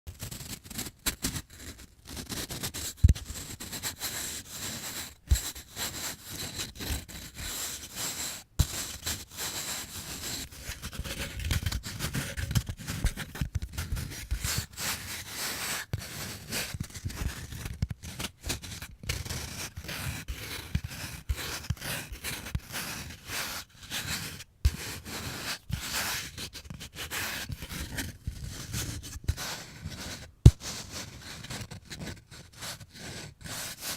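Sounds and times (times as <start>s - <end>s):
fingers scraping grip tape: 8.6s - 33.9s.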